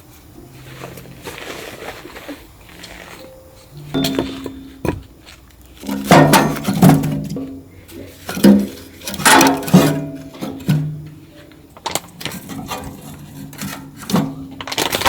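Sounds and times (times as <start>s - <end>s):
background music: 0.0s - 6.3s
dishes clattering and clinking: 3.9s - 5.1s.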